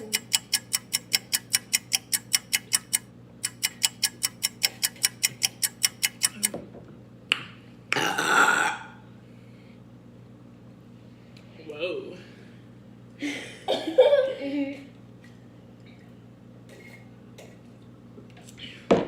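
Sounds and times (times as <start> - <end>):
fast clock-like ticking: 0.0 - 6.4
person burping: 7.9 - 9.0.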